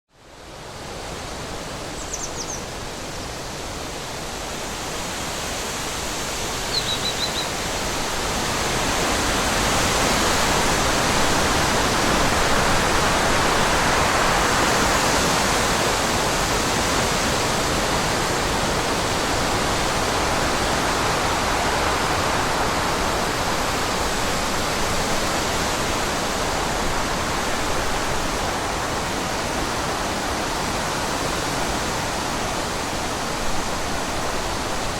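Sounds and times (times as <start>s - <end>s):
strong wind through trees: 0.1s - 34.9s
high bird chirps: 2.0s - 2.6s, 6.7s - 7.5s.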